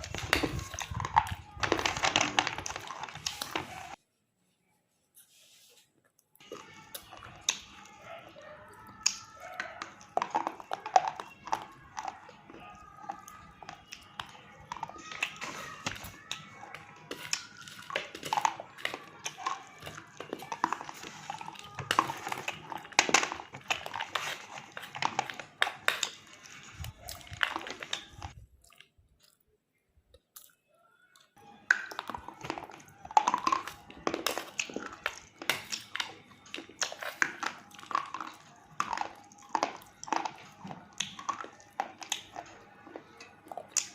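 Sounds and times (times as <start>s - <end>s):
crunchy chewing: 6.1s - 29.5s, 30.1s - 43.9s.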